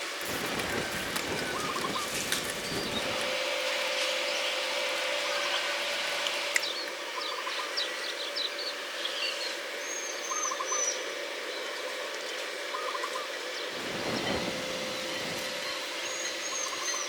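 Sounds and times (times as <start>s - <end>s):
steady hiss: 0.0s - 4.4s, 13.4s - 17.0s
faint hum: 0.1s - 17.0s
small birds chirping: 0.2s - 3.3s.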